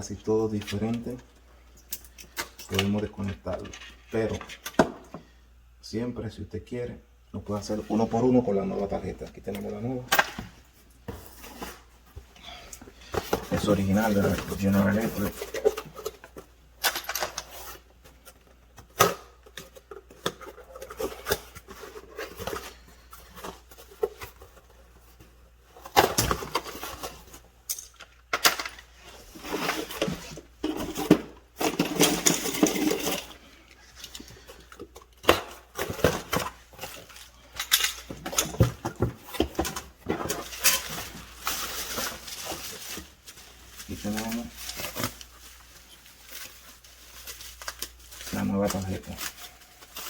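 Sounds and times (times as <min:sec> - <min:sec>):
packaging rustling: 0:29.2 - 0:50.0.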